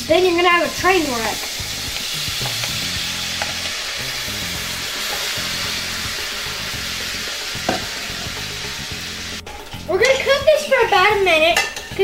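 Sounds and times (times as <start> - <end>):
shrimp sizzling in butter: 0.0 - 10.9
utensil tapping pan: 0.8 - 8.8.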